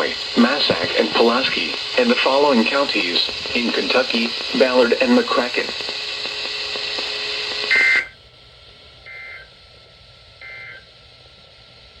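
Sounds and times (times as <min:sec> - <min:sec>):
buzzy digital data bursts: 0:00.0 - 0:07.8
radio hiss: 0:00.0 - 0:09.2.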